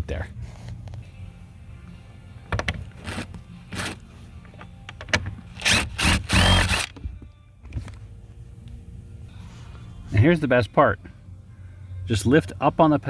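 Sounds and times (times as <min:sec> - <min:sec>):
cordless power tool spinning bolt: 0:02.5 - 0:07.0.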